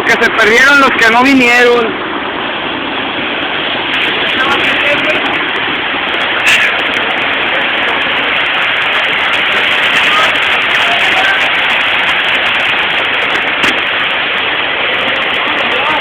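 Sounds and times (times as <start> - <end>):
waterfall rushing: 0.0 - 16.0
short bump: 13.3 - 13.9.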